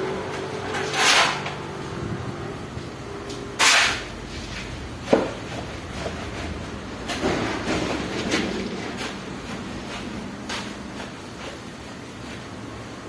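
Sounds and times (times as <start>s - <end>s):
masonry block scraping: 0.3s - 1.6s, 3.6s - 11.7s.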